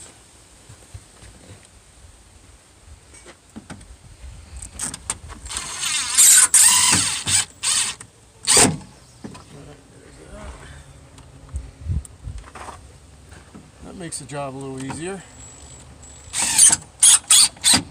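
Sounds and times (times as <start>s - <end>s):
small electric motor whirring: 5.4s - 8.6s, 15.4s - 17.9s.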